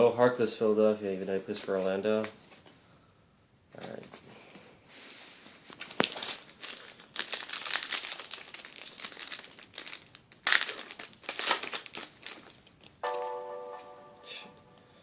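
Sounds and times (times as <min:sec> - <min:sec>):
wrapper crinkling and tearing: 0:05.7 - 0:13.0
steady musical tone: 0:13.0 - 0:15.0.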